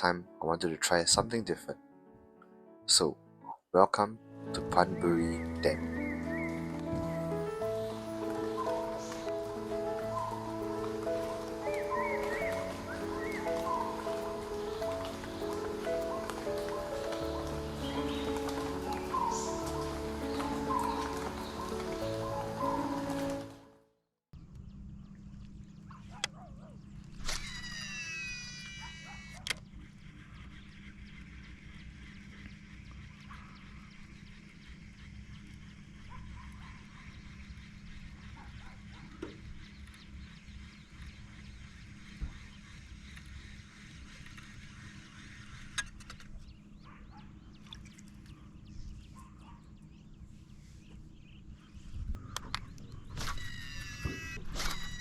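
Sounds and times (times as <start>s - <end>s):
birds chirping: 4.4s - 23.7s, 24.4s - 55.0s
fishing reel brake whine: 27.2s - 32.8s, 53.2s - 55.0s
steady low rumble: 48.4s - 53.2s.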